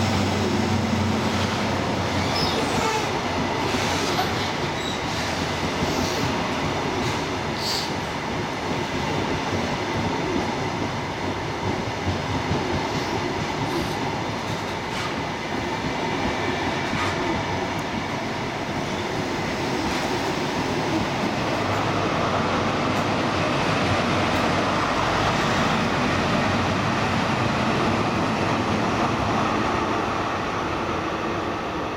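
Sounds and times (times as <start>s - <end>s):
diesel train engine: 0.0s - 8.2s
train wheels on rails: 0.0s - 31.9s.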